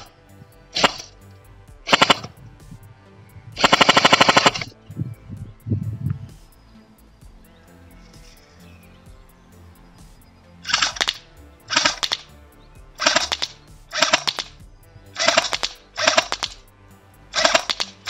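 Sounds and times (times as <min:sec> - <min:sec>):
airsoft machine gun bursts: 0:00.8 - 0:01.1, 0:01.9 - 0:02.3, 0:03.6 - 0:04.7, 0:10.7 - 0:12.3, 0:13.0 - 0:14.5, 0:15.2 - 0:16.6, 0:17.4 - 0:18.0.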